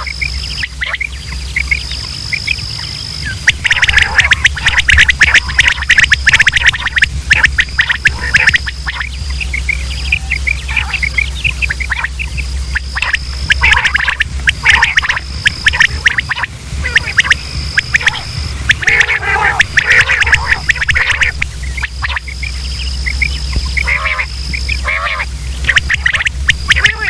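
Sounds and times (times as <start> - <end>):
high whine: 0.0 - 27.0
quail calling: 0.0 - 27.0
steady low hum: 0.0 - 27.0.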